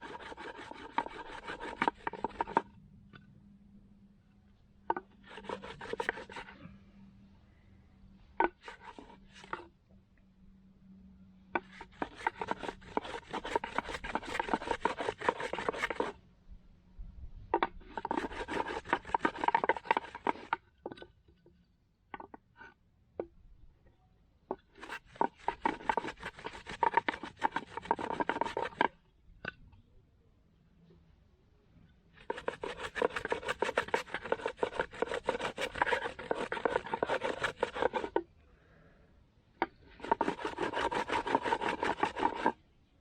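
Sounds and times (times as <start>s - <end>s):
wooden boards scraping: 0.0s - 2.6s, 5.4s - 6.6s, 11.6s - 16.1s, 17.9s - 20.6s, 24.8s - 28.9s, 32.2s - 38.2s, 39.9s - 42.6s.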